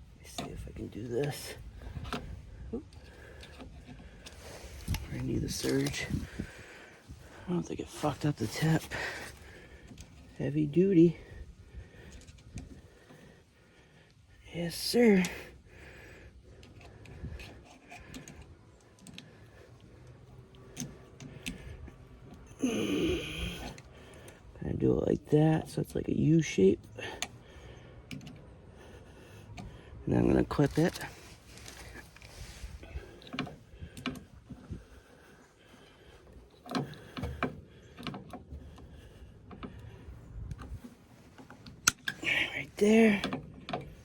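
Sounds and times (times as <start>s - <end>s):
small metallic clicks and taps: 16.6s - 22.5s, 36.6s - 42.3s.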